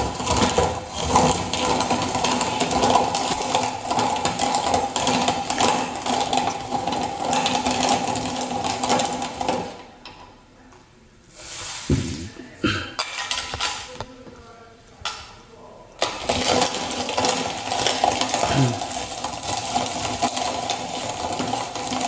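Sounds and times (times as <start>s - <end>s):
hand-cranked meat grinder whirring: 0.0s - 9.9s, 16.0s - 22.0s.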